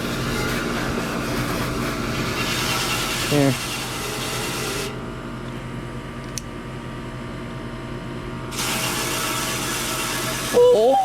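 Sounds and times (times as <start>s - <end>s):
steady machine hum: 0.0s - 11.0s
hose spraying water on metal coil: 8.6s - 11.0s.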